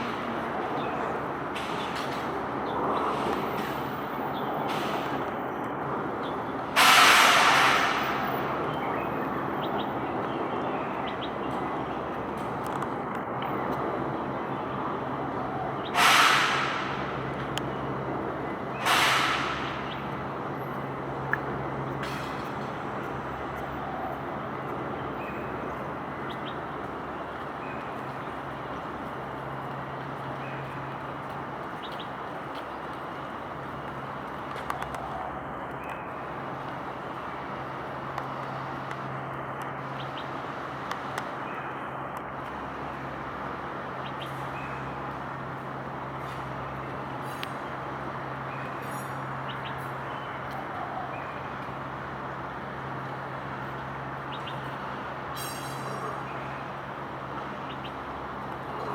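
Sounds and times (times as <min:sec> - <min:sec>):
traffic noise: 0:00.0 - 0:58.9
air brake hiss: 0:06.8 - 0:08.2, 0:15.9 - 0:17.1, 0:18.8 - 0:19.9.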